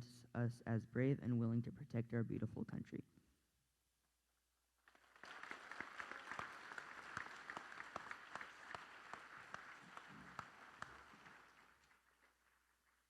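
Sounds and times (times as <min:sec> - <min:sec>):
audience applauding: 0:04.8 - 0:13.0.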